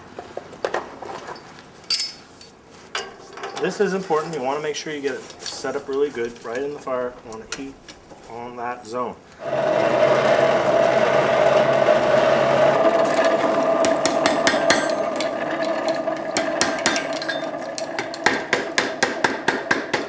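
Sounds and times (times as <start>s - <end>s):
steady hum: 9.4s - 20.0s.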